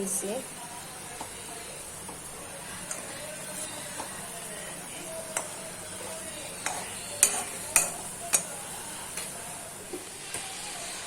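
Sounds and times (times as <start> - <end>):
chicken sizzling in a pan: 0.0 - 11.0.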